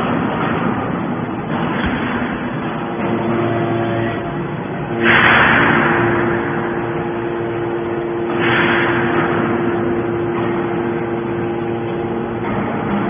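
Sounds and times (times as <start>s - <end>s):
baler motor humming: 2.4s - 13.0s
hydraulic hissing surge: 4.8s - 12.4s.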